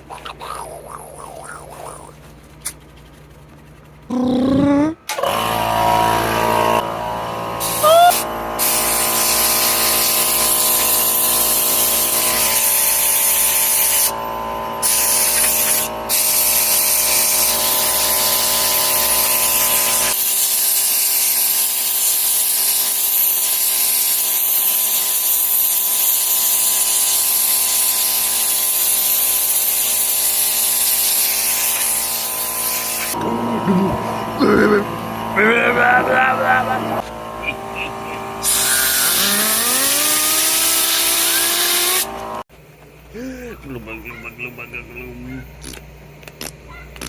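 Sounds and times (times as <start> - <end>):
electric drill running: 5.1 - 35.4, 37.0 - 42.5.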